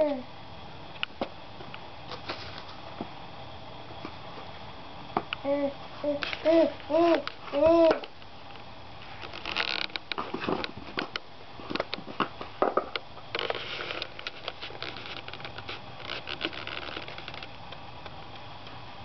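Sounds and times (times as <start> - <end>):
rustling: 13.4 - 17.5.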